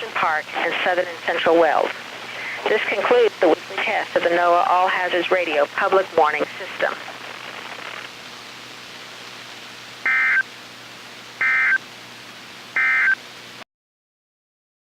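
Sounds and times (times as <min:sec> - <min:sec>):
radio hiss: 0:00.0 - 0:13.6
buzzy digital data tones: 0:10.0 - 0:10.5, 0:11.4 - 0:11.9, 0:12.7 - 0:13.2.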